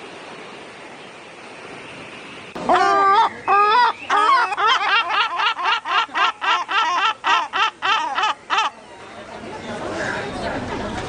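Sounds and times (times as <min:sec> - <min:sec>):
gull calling: 0:02.6 - 0:08.8.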